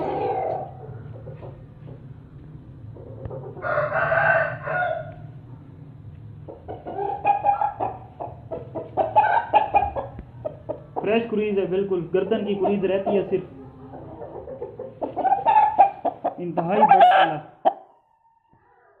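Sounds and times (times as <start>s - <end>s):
rooster crowing: 3.6s - 5.3s, 16.8s - 18.6s
rapid clucking calls: 6.4s - 17.9s.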